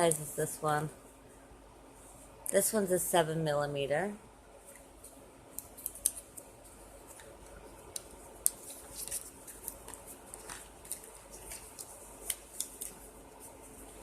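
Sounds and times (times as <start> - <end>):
plastic packaging crinkling: 7.0 - 14.0.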